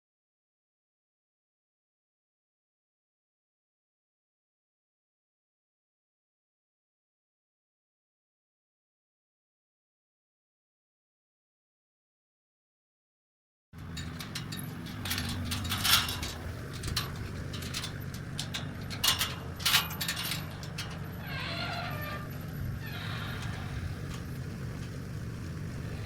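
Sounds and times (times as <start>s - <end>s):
sharp clicks and knocks: 13.8s - 21.3s.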